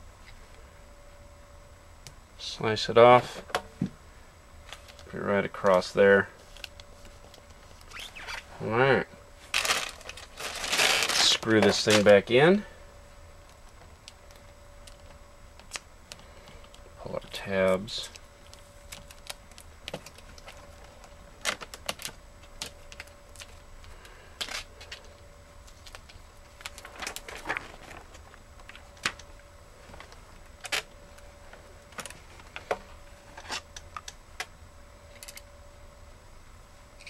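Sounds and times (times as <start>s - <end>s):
faint steady hum: 0.0s - 37.0s.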